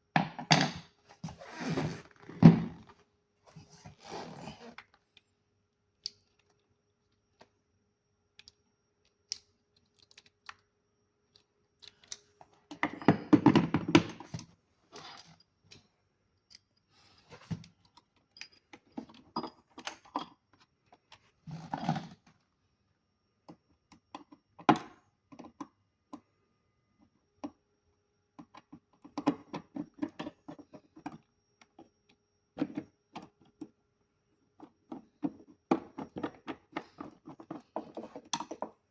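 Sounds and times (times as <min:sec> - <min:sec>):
small object clicking and clattering: 0:08.3 - 0:10.7.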